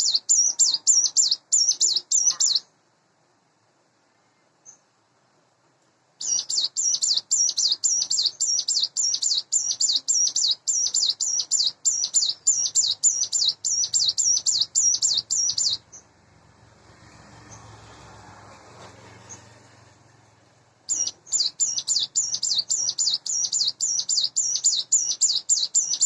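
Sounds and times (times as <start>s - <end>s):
bird singing high sweeping notes: 6.2s - 16.0s, 20.9s - 26.0s.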